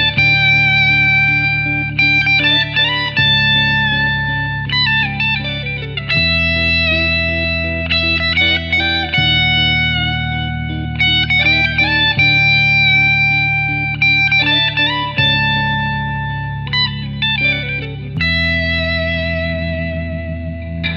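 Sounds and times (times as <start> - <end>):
instrumental guitar music: 0.0 - 20.9.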